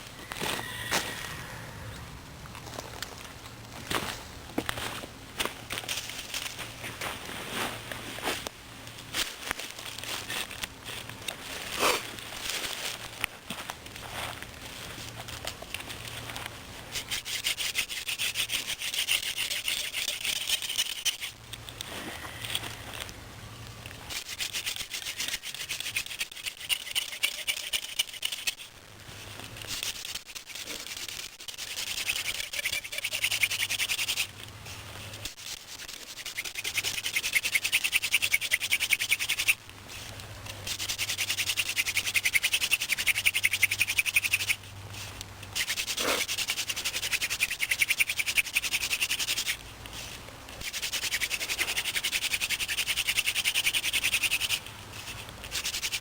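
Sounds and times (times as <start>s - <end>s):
wood rasping on wood: 17.0s - 21.4s, 24.1s - 28.6s, 29.8s - 34.3s, 35.4s - 39.6s, 40.6s - 44.6s, 45.6s - 49.6s, 50.6s - 54.6s, 55.5s - 56.0s.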